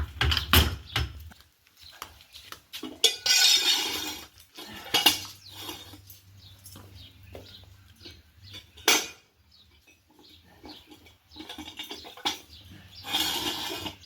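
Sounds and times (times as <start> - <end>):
metal tools clanking: 8.0 - 14.0.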